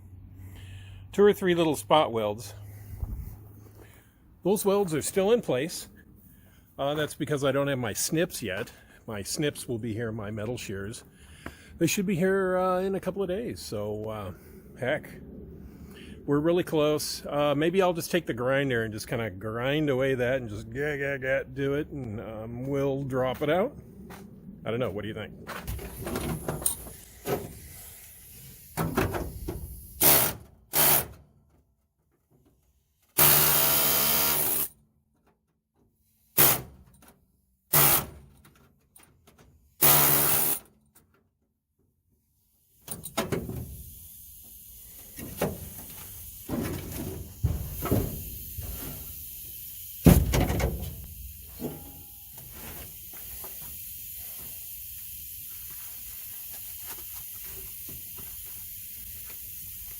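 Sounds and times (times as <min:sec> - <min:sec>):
steady hiss: 0:42.6 - 0:59.9.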